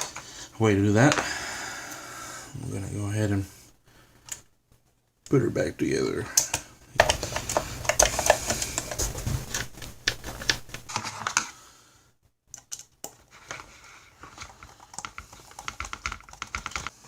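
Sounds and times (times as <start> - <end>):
plastic parts clicking: 6.4 - 11.4.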